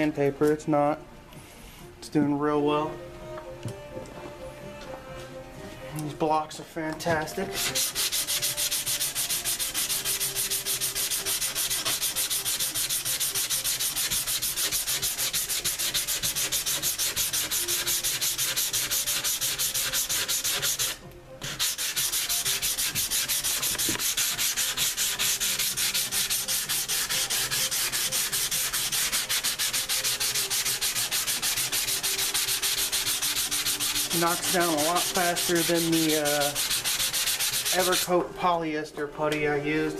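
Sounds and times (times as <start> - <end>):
sandpaper rubbing back and forth: 7.4 - 38.2.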